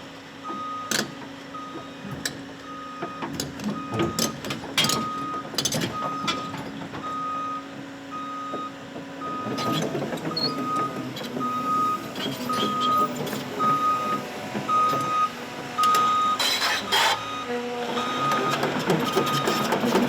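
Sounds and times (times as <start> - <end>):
backup alarm beeping: 10.5 - 19.7.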